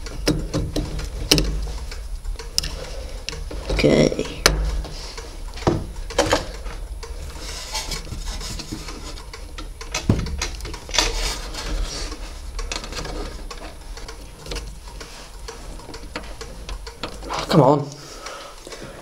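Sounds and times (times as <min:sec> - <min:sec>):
cables rustling: 0:00.0 - 0:19.0.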